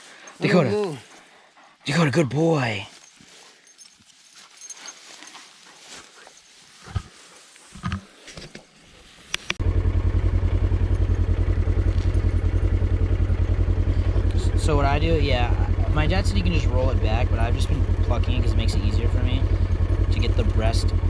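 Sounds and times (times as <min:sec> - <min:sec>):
handling noises: 0:02.8 - 0:09.6
engine running with low pulse: 0:09.3 - 0:21.0.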